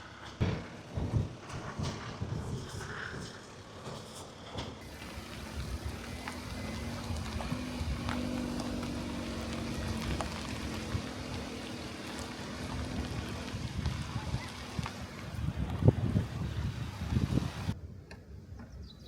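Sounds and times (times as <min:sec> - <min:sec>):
low engine-like rumble: 0:04.8 - 0:18.1.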